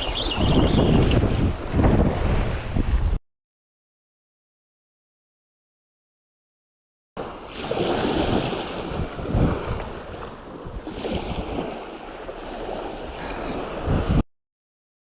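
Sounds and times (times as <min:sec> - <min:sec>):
wind gusting on microphone: 0:00.0 - 0:03.2, 0:07.5 - 0:14.2
sea waves washing: 0:07.2 - 0:14.2.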